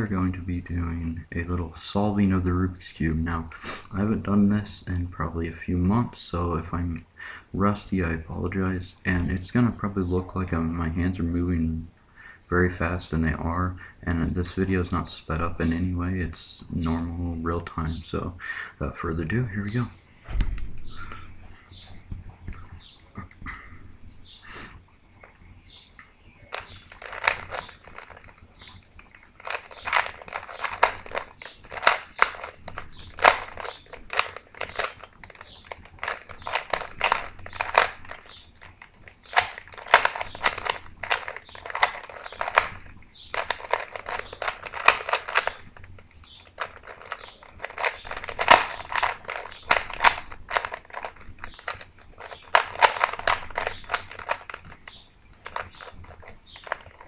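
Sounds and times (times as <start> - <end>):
puzzle cube plastic clicking: 26.5 - 57.0.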